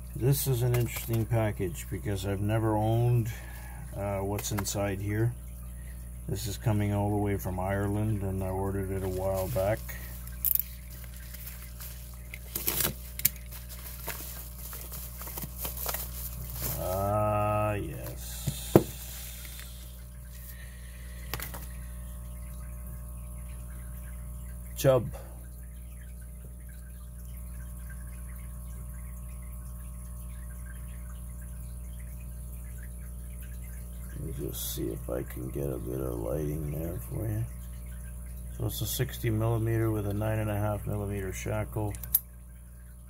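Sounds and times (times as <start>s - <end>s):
low electrical hum: 0.0s - 43.0s
packaging crinkling and tearing: 9.0s - 17.0s.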